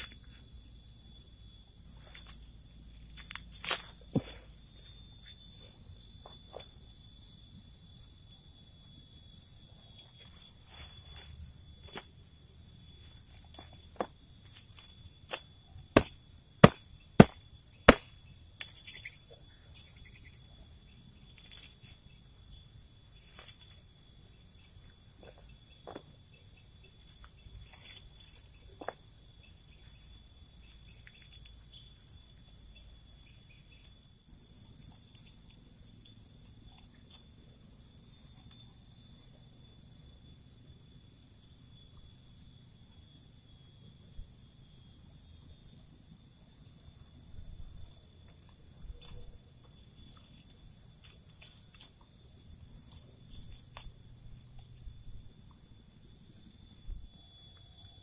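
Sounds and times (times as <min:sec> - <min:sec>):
insects droning: 0:00.0 - 0:58.0.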